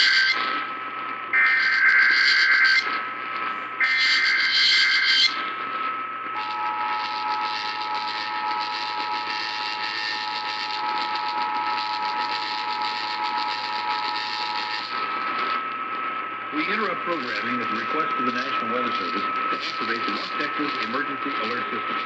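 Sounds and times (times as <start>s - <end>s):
am radio hiss: 0.0s - 22.0s.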